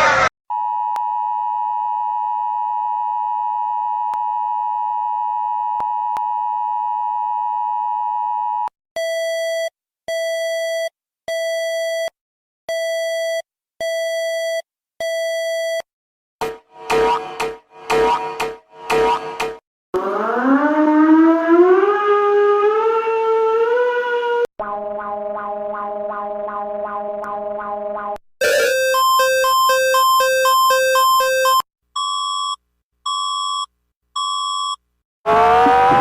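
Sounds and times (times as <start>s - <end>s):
two-tone emergency alert sound: 28.4s - 36.0s
wavering siren-like tone: 35.3s - 36.0s.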